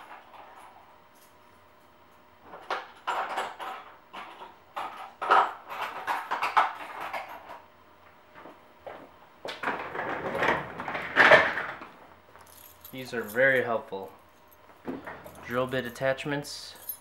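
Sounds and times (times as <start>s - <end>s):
metal tools clattering: 12.4s - 17.0s.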